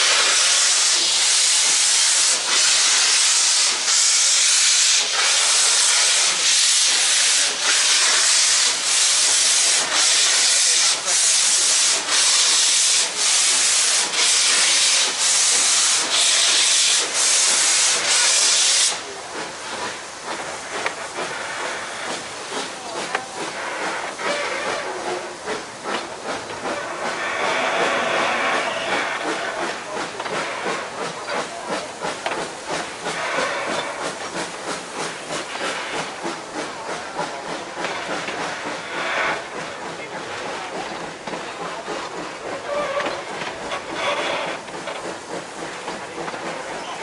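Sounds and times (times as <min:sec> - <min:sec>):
steam locomotive exhaust beats: 0:00.0 - 0:47.0
train running: 0:00.0 - 0:47.0.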